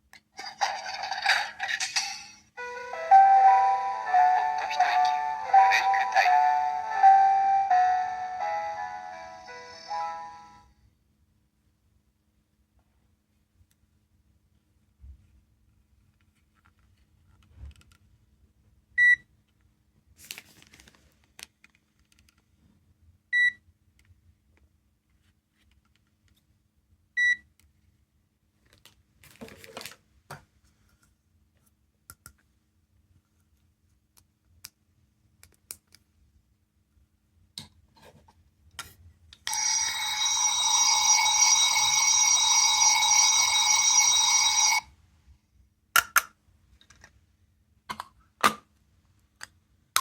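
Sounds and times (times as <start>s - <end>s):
multi-tone electronic sound: 2.6s - 10.6s.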